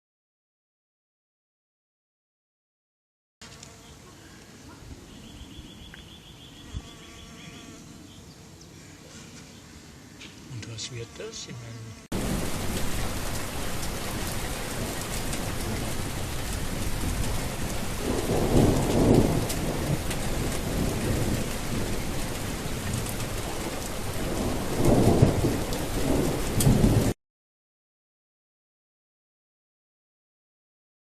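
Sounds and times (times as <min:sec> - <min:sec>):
heavy rain: 0:12.1 - 0:27.2
low rolls of thunder: 0:12.1 - 0:27.2.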